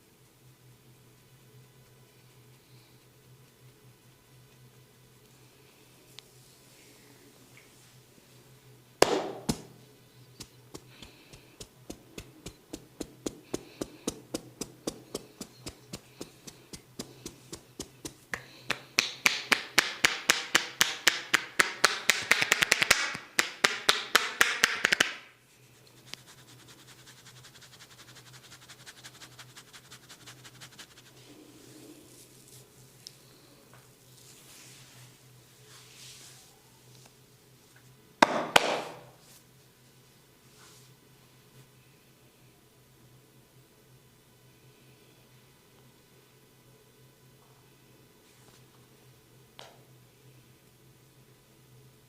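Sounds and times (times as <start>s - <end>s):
hand taps on body: 9.0s - 9.7s
hand slap: 9.0s - 9.8s, 16.4s - 25.3s, 38.2s - 39.1s
rapid light tapping: 10.4s - 23.0s.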